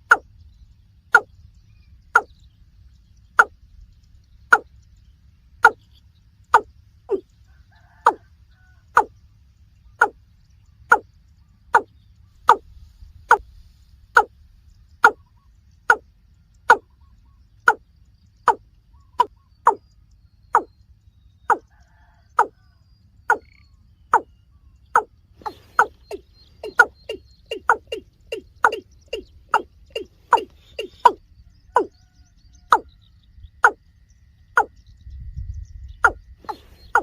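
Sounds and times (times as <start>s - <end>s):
bird calling hollow notes: 0.0s - 0.3s, 1.1s - 1.4s, 2.0s - 2.4s, 3.3s - 3.6s, 4.4s - 4.8s, 5.6s - 8.3s, 10.0s - 10.2s, 10.8s - 12.7s, 14.1s - 14.3s, 15.0s - 17.8s, 18.4s - 20.7s, 21.4s - 22.6s, 23.3s - 33.9s, 35.8s - 37.0s.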